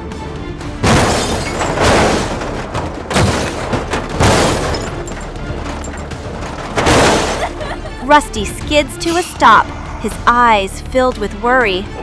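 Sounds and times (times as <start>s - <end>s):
background music: 0.0s - 6.3s
heavy booming crash impacts: 0.7s - 8.1s.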